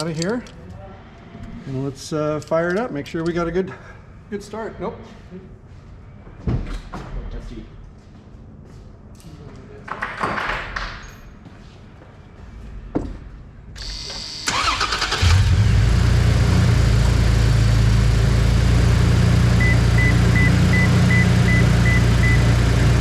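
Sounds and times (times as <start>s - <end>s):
starter cranking engine: 13.8s - 16.0s.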